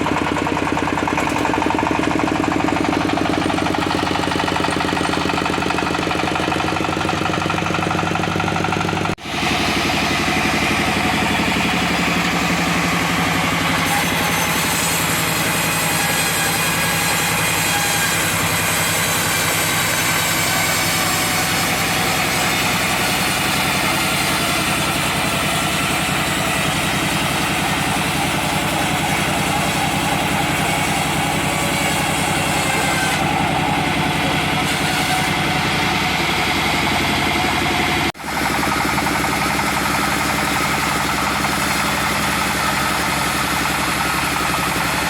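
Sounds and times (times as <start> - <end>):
chainsaw engine running: 0.0 - 45.0.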